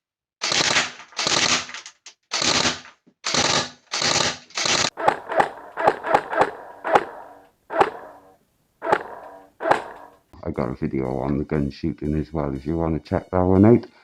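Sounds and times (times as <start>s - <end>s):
airsoft rifle firing: 0.4s - 8.0s.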